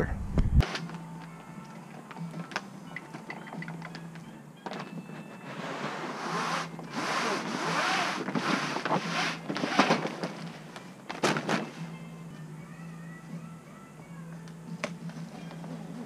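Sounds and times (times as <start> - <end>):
awning fabric rustling and scraping: 4.9 - 12.0.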